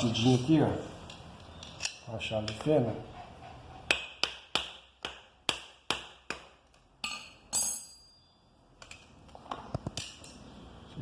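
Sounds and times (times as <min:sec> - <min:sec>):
ringing metallic clinks: 0:07.0 - 0:08.5.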